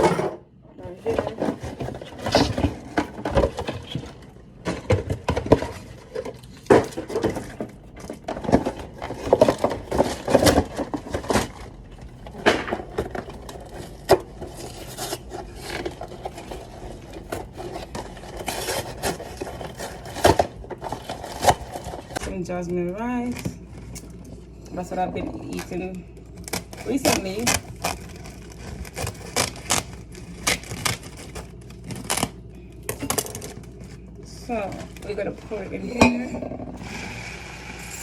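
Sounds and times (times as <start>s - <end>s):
kitchen items knocking and clattering: 0.0s - 24.0s, 32.8s - 36.9s.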